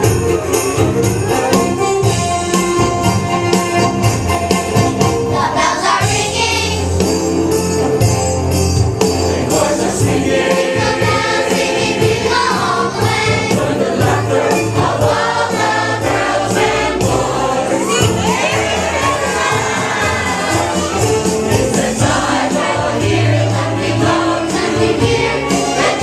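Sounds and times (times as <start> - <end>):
instrumental accompaniment: 0.0 - 26.0
jingling percussion: 0.0 - 26.0
choir singing gospel song: 4.9 - 7.2, 9.2 - 26.0.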